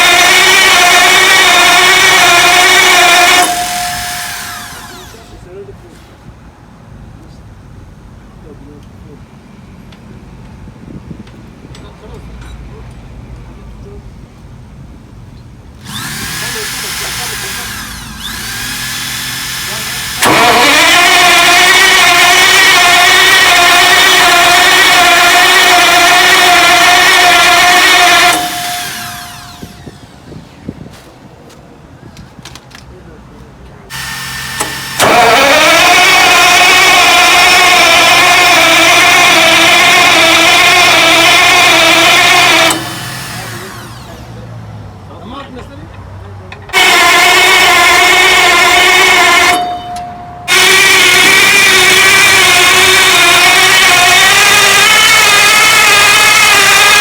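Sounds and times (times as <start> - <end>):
starter motor whine: 0.0 - 5.6, 15.8 - 30.6, 33.9 - 44.6, 46.7 - 57.0.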